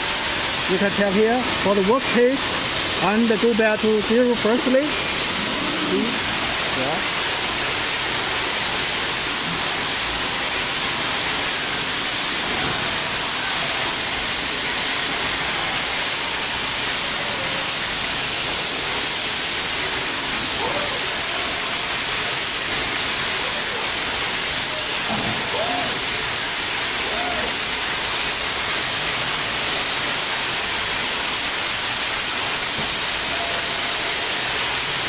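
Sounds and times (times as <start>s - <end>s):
steady rushing hiss: 0.0s - 35.0s.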